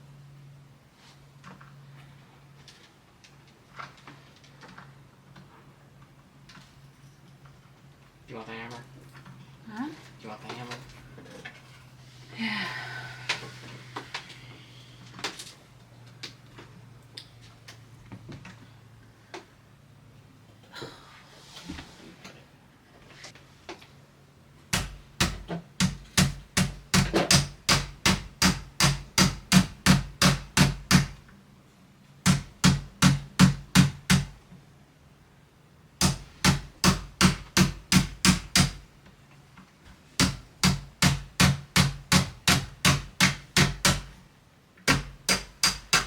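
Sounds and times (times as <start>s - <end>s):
hammer tapping rapidly: 24.8s - 31.2s, 40.2s - 44.1s, 44.9s - 46.0s.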